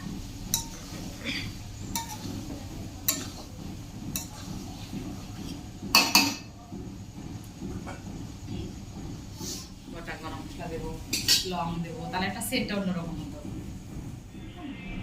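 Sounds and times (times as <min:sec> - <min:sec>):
metal utensils clinking on pots: 0:00.0 - 0:06.5, 0:11.1 - 0:11.6
kitchen background: 0:00.0 - 0:13.9.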